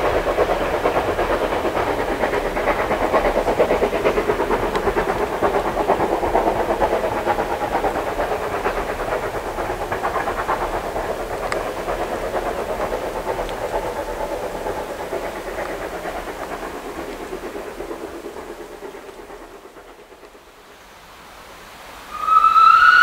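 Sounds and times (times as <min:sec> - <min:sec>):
steam locomotive exhaust beats: 0:00.0 - 0:23.0
train running on rails: 0:00.0 - 0:23.0.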